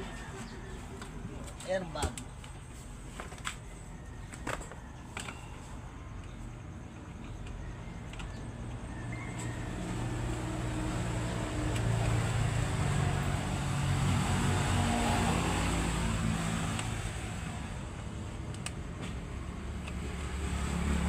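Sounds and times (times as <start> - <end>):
vehicle passing by: 8.8 - 21.0.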